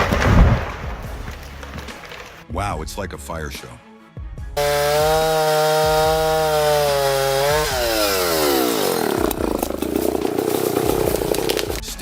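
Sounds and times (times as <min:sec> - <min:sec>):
chainsaw revving: 0:04.6 - 0:11.8.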